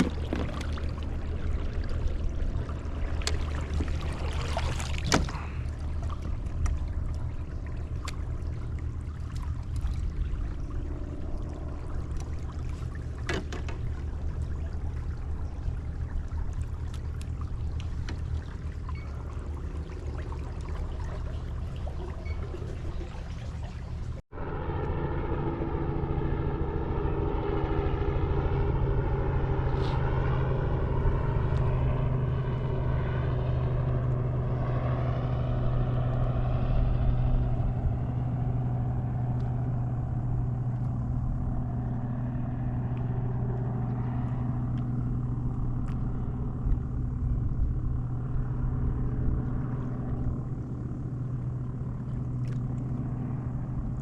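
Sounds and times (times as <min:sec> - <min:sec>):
engine humming: 0:00.0 - 0:54.0.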